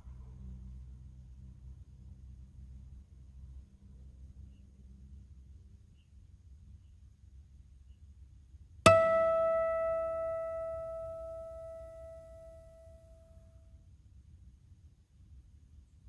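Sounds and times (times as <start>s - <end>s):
single ringing musical note: 8.9s - 13.5s.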